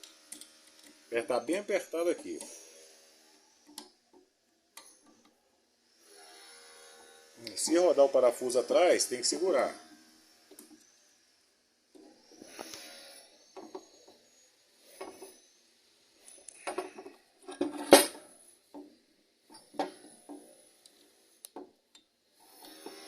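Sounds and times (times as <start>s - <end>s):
metal clinks and rattles: 16.5s - 18.3s.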